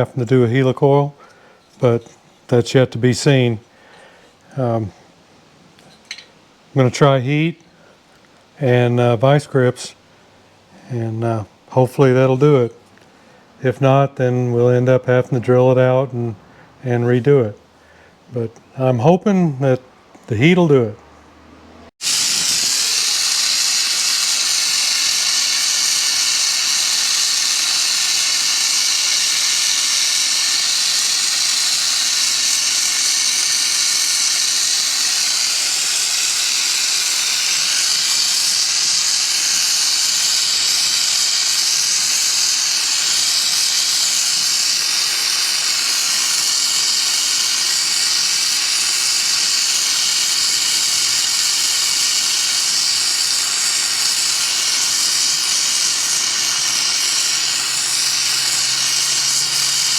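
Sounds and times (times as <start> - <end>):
gas torch hissing: 21.9 - 59.9.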